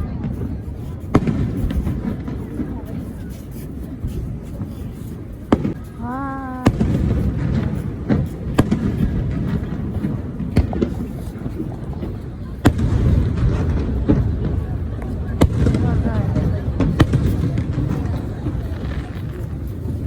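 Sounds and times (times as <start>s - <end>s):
fireworks bangs: 0.0s - 20.0s
person calling out: 6.0s - 6.8s.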